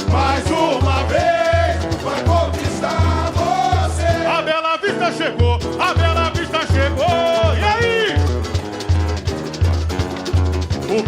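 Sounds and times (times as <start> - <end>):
surdo bass drums beating: 0.0 - 4.5, 5.4 - 11.0
people singing: 0.0 - 8.0
samba band playing: 0.0 - 11.0.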